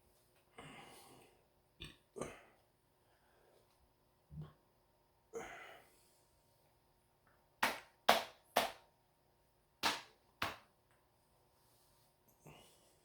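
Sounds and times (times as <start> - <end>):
hand slapping bloated belly: 7.6 - 8.8, 9.8 - 10.7.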